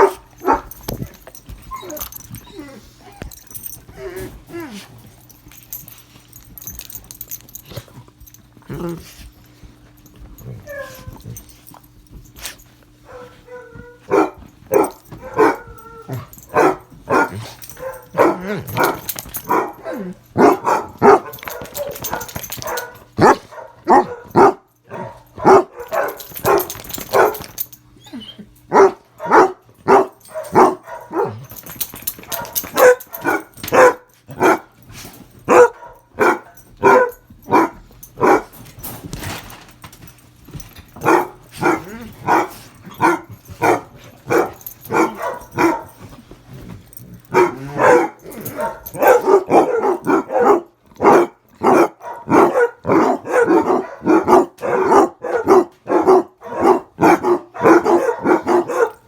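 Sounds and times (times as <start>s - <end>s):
dog barking: 0.0s - 0.8s, 13.1s - 15.8s, 16.4s - 27.5s, 28.7s - 31.6s, 32.2s - 34.7s, 35.5s - 38.6s, 41.0s - 46.0s, 47.3s - 59.0s.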